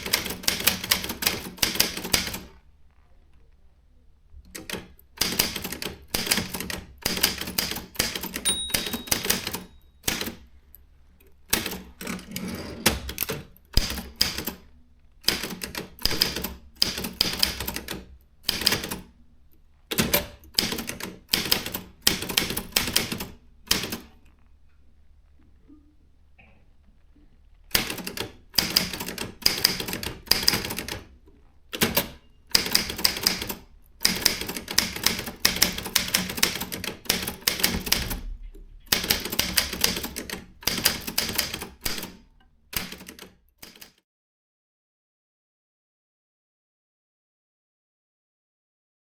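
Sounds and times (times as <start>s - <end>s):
typewriter keystrokes clacking: 4.6s - 10.4s, 12.9s - 14.6s, 15.3s - 19.1s, 27.7s - 31.1s, 31.7s - 38.3s, 38.9s - 42.2s, 42.8s - 44.0s.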